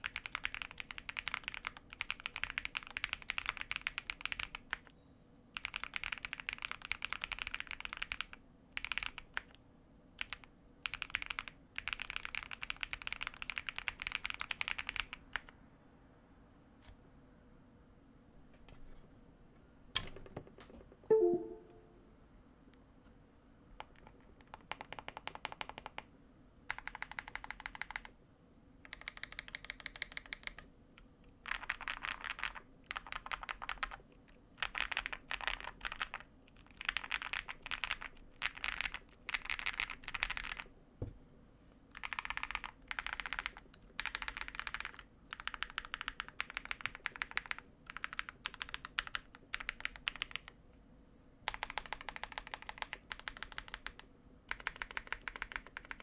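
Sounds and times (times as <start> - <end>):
typing on mechanical keyboard: 0.0 - 4.9, 5.5 - 9.6, 10.2 - 15.6, 23.8 - 26.1, 26.7 - 28.2, 28.9 - 30.7, 31.4 - 34.0, 34.6 - 40.7, 41.9 - 50.6, 51.5 - 56.0.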